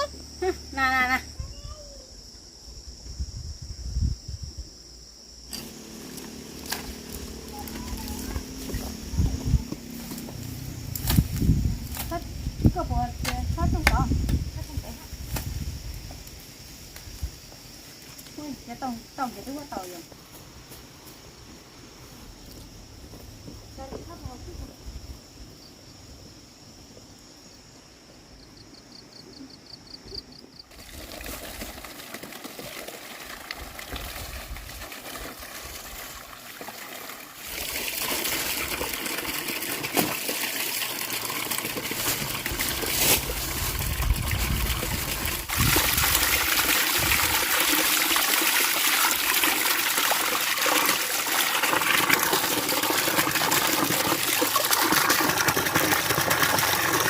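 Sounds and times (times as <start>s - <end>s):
water running and splashing: 30.7s - 57.0s.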